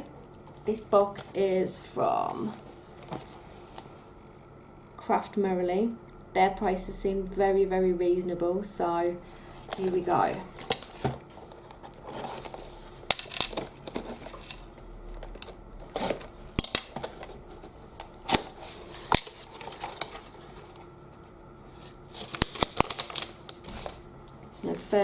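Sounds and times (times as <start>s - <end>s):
packaging rustling: 9.7s - 14.7s, 15.3s - 20.9s, 21.8s - 24.0s.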